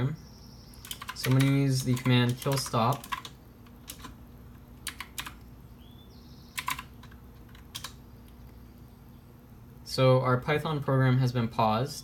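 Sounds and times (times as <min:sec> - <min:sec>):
keyboard keystrokes: 0:00.8 - 0:04.2, 0:04.8 - 0:05.4, 0:06.6 - 0:08.0.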